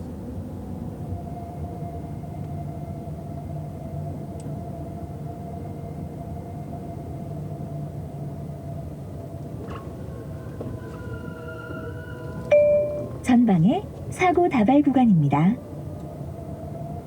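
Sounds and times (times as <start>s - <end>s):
car cabin road rumble: 9.4s - 16.1s.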